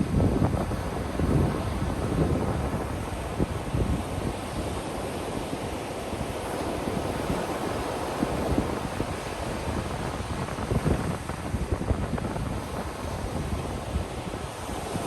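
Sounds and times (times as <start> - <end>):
ocean surf washing onto beach: 0.0 - 15.0
wind rumbling on microphone: 0.0 - 15.0.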